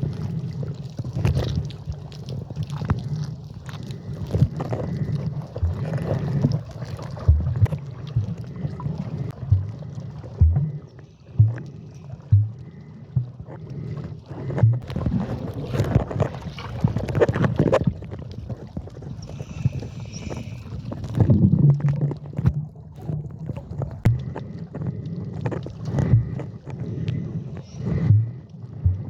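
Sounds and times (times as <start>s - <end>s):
water sloshing and splashing: 0.0s - 29.0s
low thumps: 7.3s - 8.4s, 10.4s - 10.8s, 11.4s - 11.7s, 12.3s - 12.6s, 14.6s - 15.1s, 28.0s - 29.0s.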